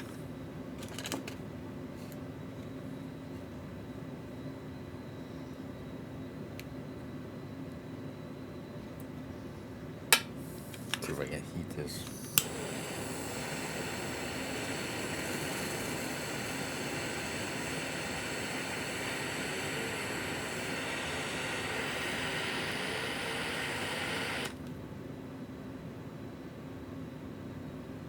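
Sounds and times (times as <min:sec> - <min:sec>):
gas torch hissing: 0:11.9 - 0:24.6.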